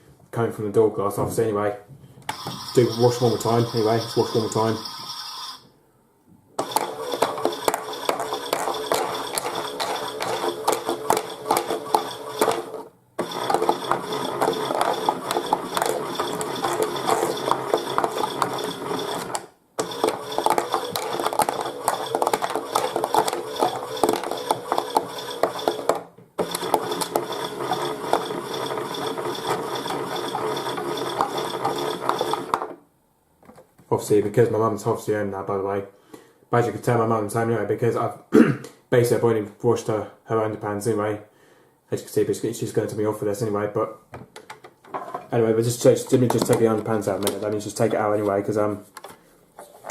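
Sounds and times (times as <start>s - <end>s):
toy washing machine whirring rattle: 2.3s - 5.6s, 6.6s - 32.7s, 45.9s - 47.9s.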